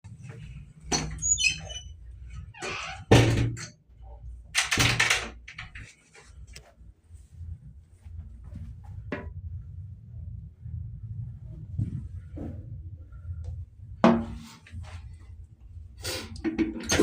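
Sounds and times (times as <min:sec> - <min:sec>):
low steady hum: 0:01.8 - 0:17.0.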